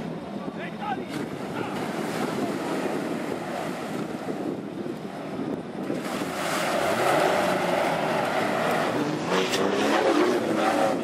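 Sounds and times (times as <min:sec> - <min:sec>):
wind noise on microphone: 0:00.0 - 0:11.0
off-road engine revving: 0:05.8 - 0:11.0.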